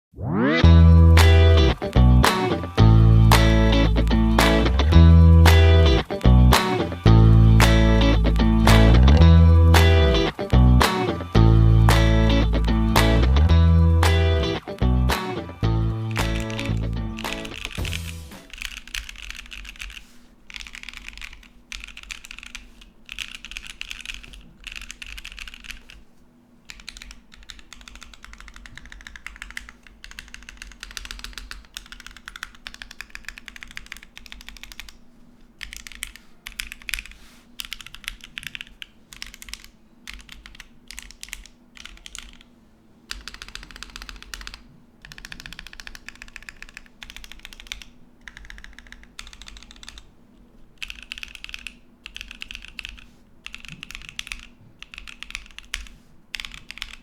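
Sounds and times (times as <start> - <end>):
mechanical keyboard typing: 15.9 - 26.0, 26.7 - 35.0, 35.6 - 42.5, 43.1 - 50.1, 50.8 - 57.0.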